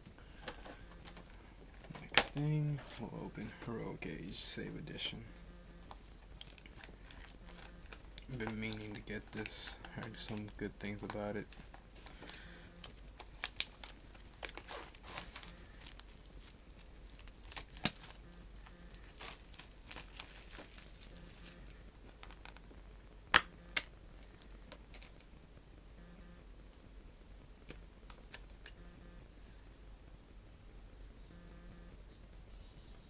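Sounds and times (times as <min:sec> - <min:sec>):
plastic wrapping crinkling and tearing: 0:00.3 - 0:05.2, 0:05.8 - 0:22.7, 0:23.7 - 0:25.3.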